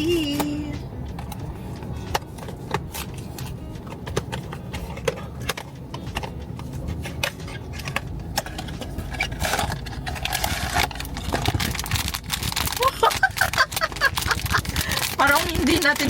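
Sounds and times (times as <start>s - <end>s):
packaging crinkling and tearing: 7.8s - 16.0s.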